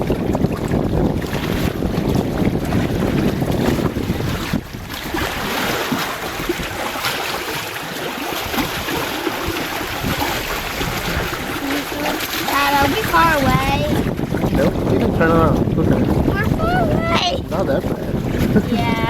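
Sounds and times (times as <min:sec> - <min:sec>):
water rushing: 0:00.0 - 0:19.0
wind buffeting microphone: 0:00.0 - 0:19.0
heavy low rumble: 0:10.8 - 0:19.0.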